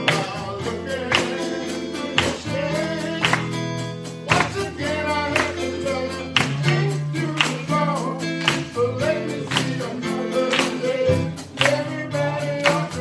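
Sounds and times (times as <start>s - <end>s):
gospel band playing: 0.0s - 13.0s
singing: 4.3s - 13.0s.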